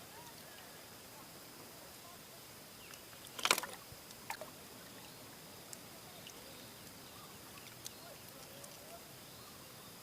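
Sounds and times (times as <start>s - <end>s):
water drips: 2.8s - 9.3s
water splash: 3.3s - 4.5s.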